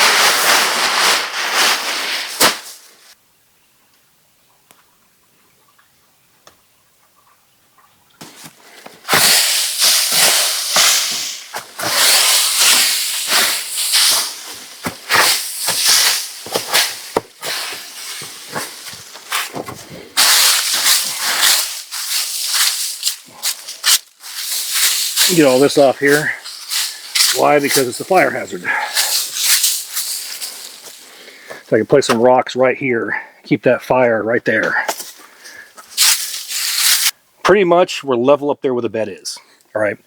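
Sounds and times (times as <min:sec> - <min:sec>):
dry leaves rustling as swept: 0:00.0 - 0:03.2, 0:08.2 - 0:31.6, 0:35.8 - 0:37.2.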